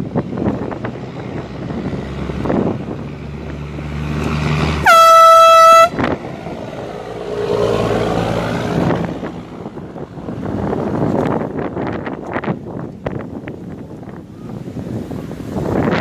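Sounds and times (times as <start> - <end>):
air horn blast: 4.8 - 6.1.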